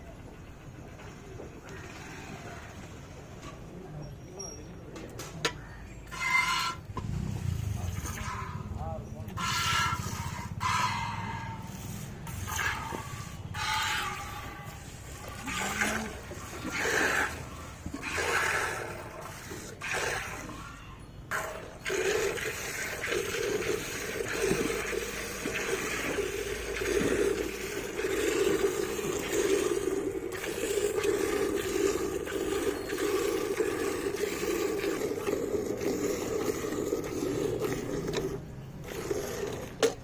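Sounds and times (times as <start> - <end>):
liquid splashing: 21.3 - 39.8.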